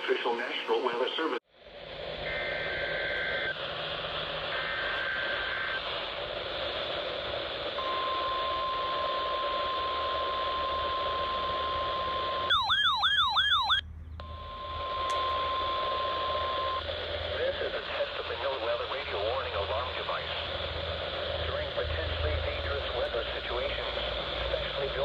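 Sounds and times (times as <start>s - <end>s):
static hiss and hum: 0.0s - 12.6s, 14.1s - 25.0s
shrill data tones: 2.2s - 3.6s, 4.4s - 6.1s, 7.8s - 16.9s
steady warning alarm tone: 2.2s - 3.6s, 4.4s - 5.8s, 7.8s - 16.9s.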